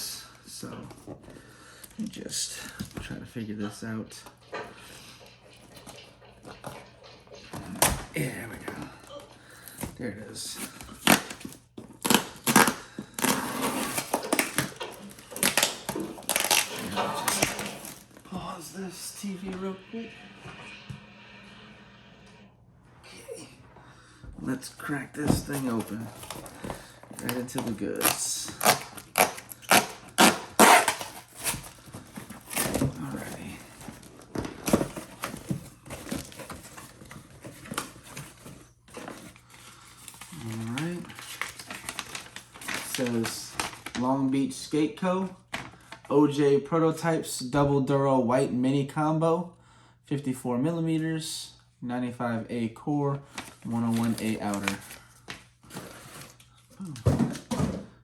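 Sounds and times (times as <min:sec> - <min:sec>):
packaging crinkling and scraping: 0:04.1 - 0:19.4, 0:24.5 - 0:44.1, 0:53.3 - 0:56.7.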